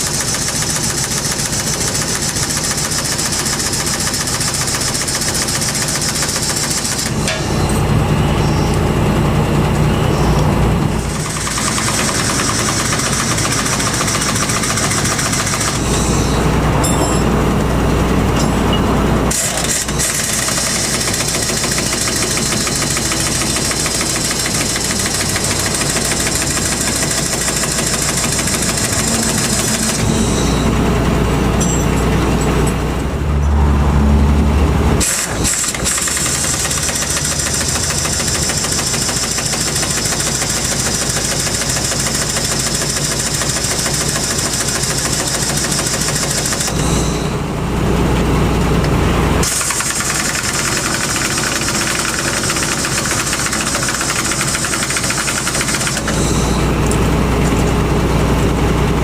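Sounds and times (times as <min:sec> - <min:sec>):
vehicle engine running: 0:07.1 - 0:40.3.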